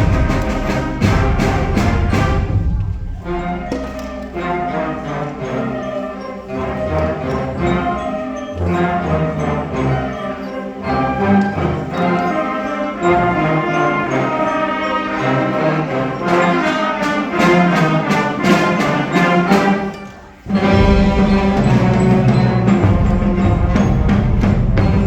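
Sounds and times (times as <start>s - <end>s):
orchestra with brass chords: 0.0s - 25.0s.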